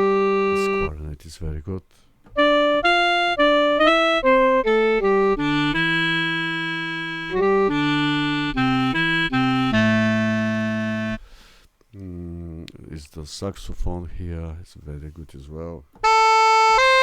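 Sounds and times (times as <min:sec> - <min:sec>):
sampled clarinet notes: 0:00.0 - 0:01.1, 0:02.3 - 0:11.5, 0:16.0 - 0:17.0.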